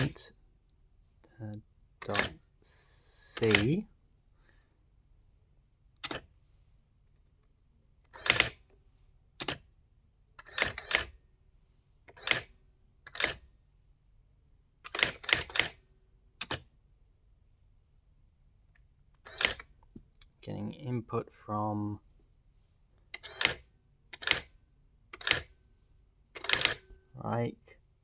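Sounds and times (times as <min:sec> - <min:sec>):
typewriter print hammer clacks: 0:03.4 - 0:03.7, 0:26.4 - 0:26.8.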